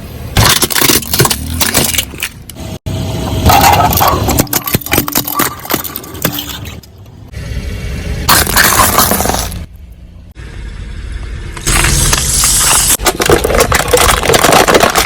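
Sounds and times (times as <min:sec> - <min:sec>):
objects crunching under car tyre: 0:00.3 - 0:02.6, 0:03.4 - 0:07.0, 0:08.3 - 0:09.7, 0:11.5 - 0:15.0.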